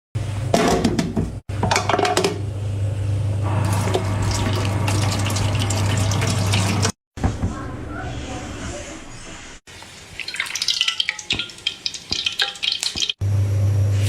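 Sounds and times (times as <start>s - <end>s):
running water splashing: 3.6s - 7.0s, 9.7s - 13.2s.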